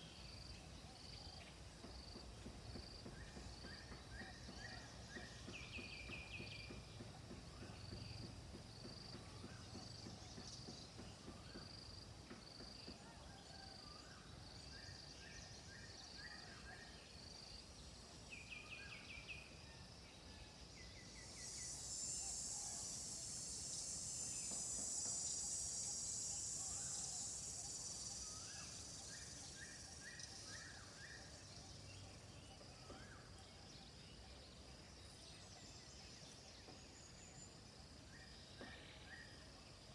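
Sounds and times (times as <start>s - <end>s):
insect buzzing drone: 17.1s - 32.3s.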